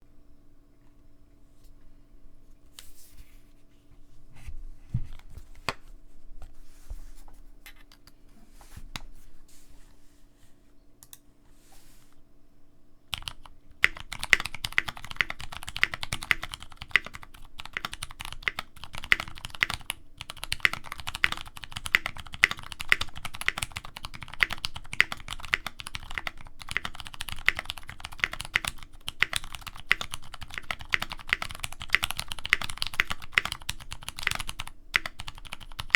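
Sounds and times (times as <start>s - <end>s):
typing on mechanical keyboard: 13.1s - 35.9s.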